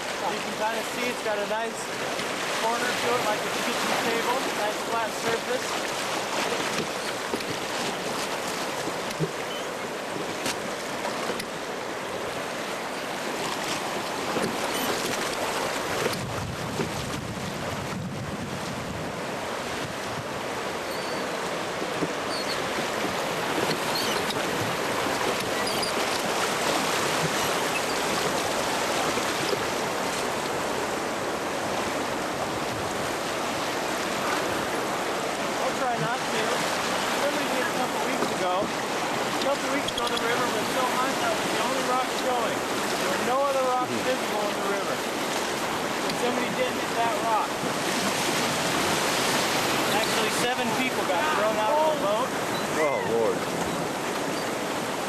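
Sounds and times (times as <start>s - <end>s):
river water rushing: 0.0s - 55.0s
wind buffeting microphone: 15.9s - 20.4s.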